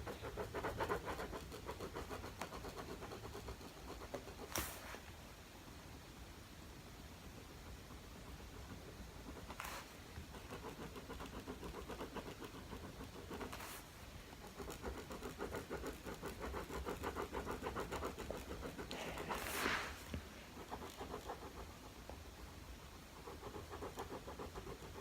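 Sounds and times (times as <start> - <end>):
pen scribbling on paper: 0.0 - 5.0, 7.4 - 25.0.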